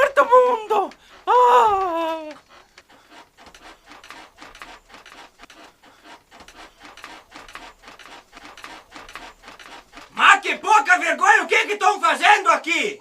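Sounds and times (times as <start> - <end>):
hands rubbing skin: 0.9 - 10.2.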